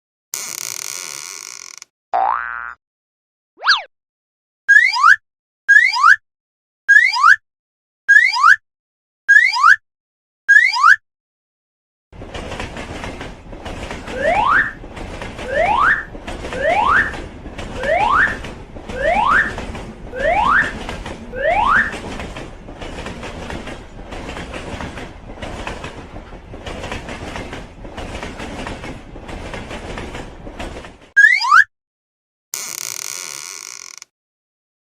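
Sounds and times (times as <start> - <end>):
train wheels clattering on rails: 12.2 - 31.2.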